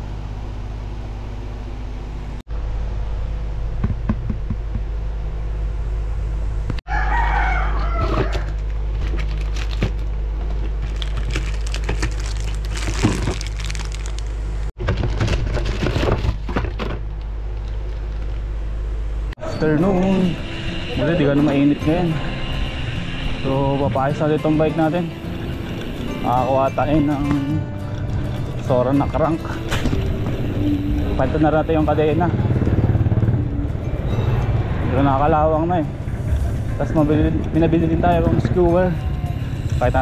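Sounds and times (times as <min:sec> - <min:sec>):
rooster crowing: 0:06.9 - 0:08.6
steady low rumble: 0:17.2 - 0:40.0.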